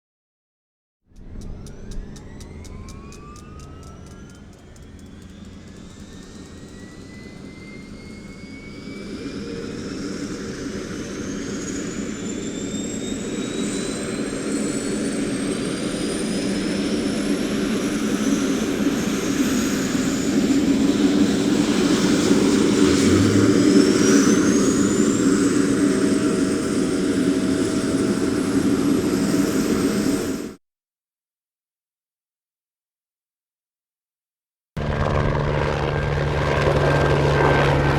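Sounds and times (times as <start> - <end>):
helicopter turbine whine: 1.1 - 30.6, 34.8 - 37.9.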